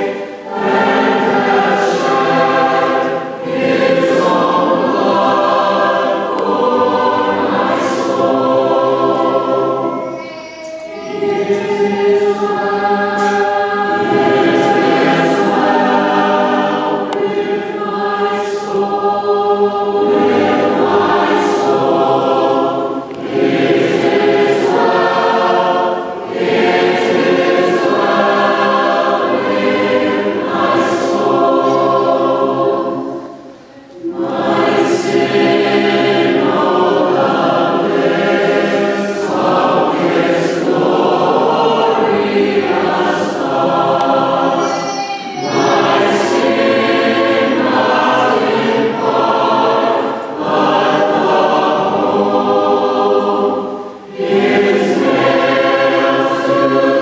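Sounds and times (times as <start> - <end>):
choir singing in harmony: 0.0 - 57.0.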